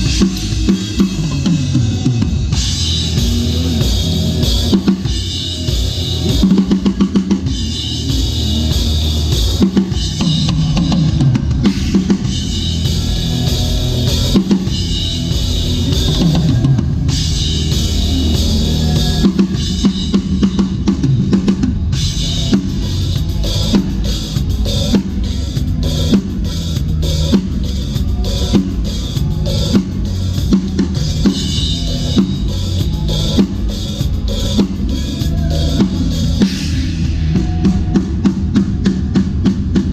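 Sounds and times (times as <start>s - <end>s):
drum kit playing groove: 0.0s - 39.9s.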